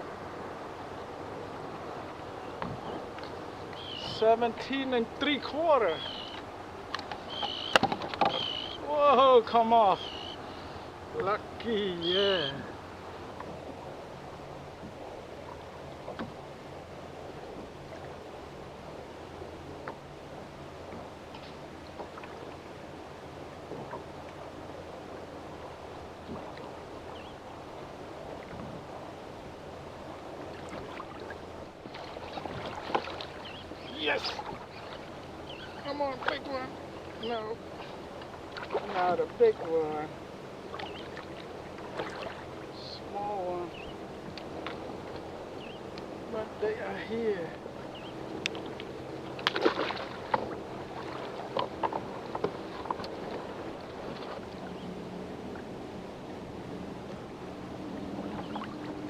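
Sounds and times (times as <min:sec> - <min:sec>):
water washing around kayak: 0:00.0 - 0:59.0
wind: 0:00.0 - 0:59.0
faint light ticks: 0:02.6 - 0:03.9, 0:19.8 - 0:20.0, 0:44.3 - 0:46.1, 0:48.4 - 0:49.6
clicks and knocks on a kayak: 0:06.4 - 0:08.5, 0:51.5 - 0:53.2.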